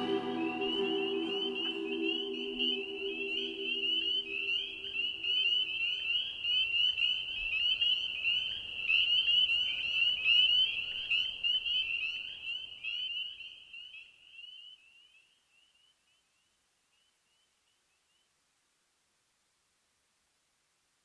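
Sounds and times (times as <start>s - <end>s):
low held musical chord: 0.0s - 5.5s
high-pitched chirping chorus: 0.0s - 5.9s.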